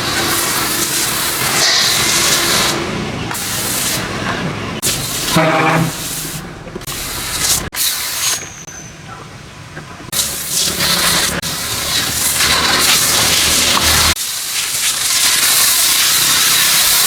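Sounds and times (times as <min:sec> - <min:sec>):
pressure washer spraying water: 0:00.0 - 0:08.7, 0:10.1 - 0:17.0.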